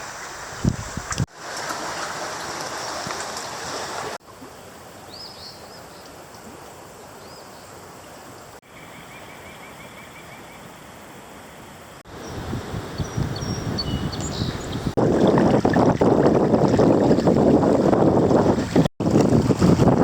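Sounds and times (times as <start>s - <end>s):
creek water rushing: 0.0s - 8.6s
bird trill: 13.0s - 14.8s
bird chirps: 13.0s - 14.9s.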